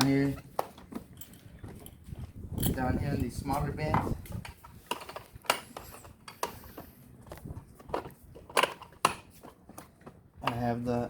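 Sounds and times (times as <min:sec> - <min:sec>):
metal tools rattling: 0:00.8 - 0:06.8.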